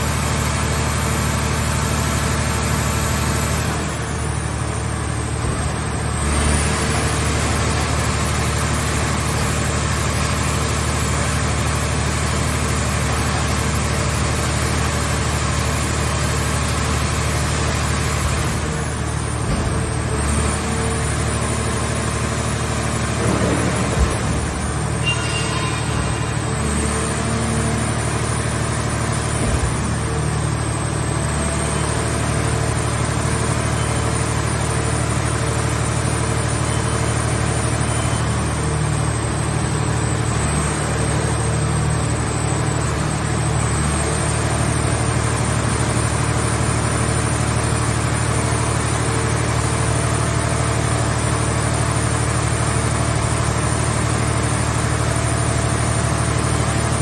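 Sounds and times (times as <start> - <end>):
engine and hydraulic drone: 0.0 - 57.0
thin high whine: 24.9 - 28.2.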